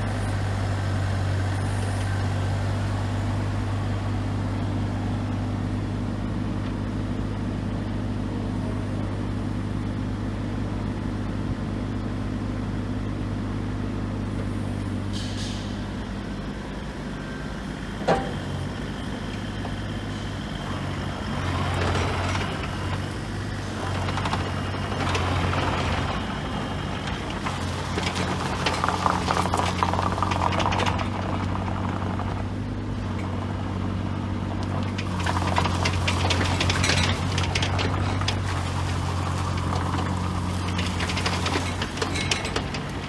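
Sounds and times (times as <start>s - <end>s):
excavator diesel engine running: 0.0s - 43.0s.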